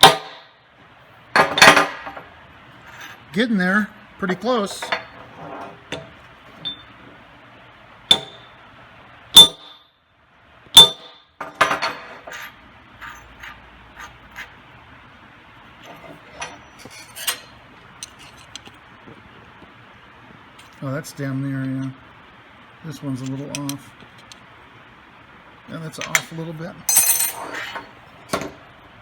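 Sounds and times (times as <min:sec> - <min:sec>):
hammer striking metal: 0:08.1 - 0:08.6, 0:09.4 - 0:09.8, 0:10.8 - 0:11.2.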